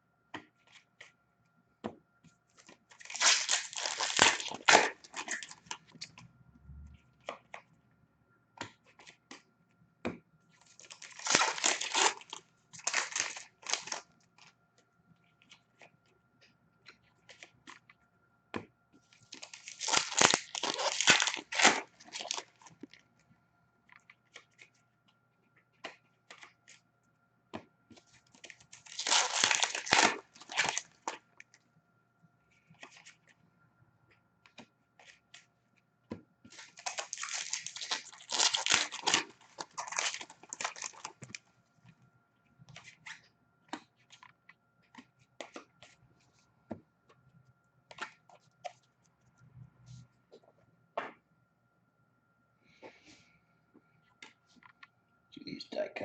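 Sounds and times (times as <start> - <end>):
faint steady hum: 0.0 - 56.0
card pack wrappers tearing and crinkling: 2.9 - 6.1, 10.6 - 14.1, 19.3 - 22.7, 28.3 - 31.2, 36.5 - 41.4.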